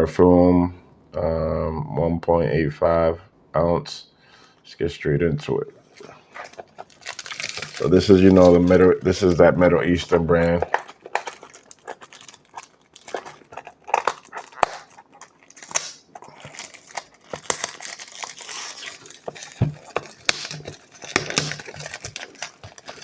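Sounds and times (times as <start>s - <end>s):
packaging crinkling and tearing: 5.8s - 23.0s.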